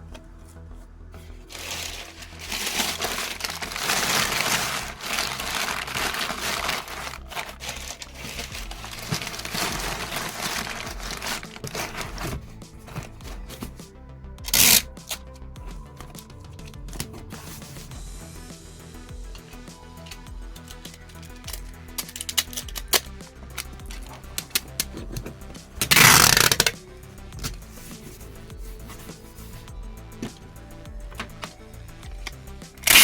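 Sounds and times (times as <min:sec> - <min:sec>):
background music: 0:00.0 - 0:33.0
packing material crinkling: 0:01.4 - 0:13.8, 0:22.0 - 0:26.8, 0:27.4 - 0:33.0.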